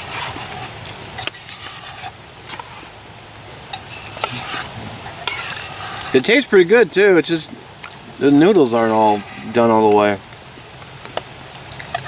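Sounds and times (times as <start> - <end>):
light clicks and scrapes: 0.0 - 3.0, 3.7 - 6.4, 8.9 - 10.1
rain hissing: 0.0 - 12.0.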